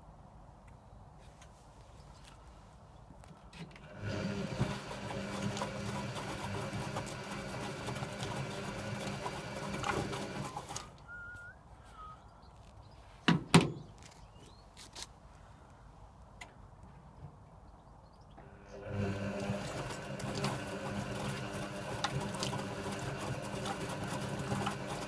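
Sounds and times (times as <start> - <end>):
washing machine motor humming: 3.8 - 10.8, 18.4 - 25.0.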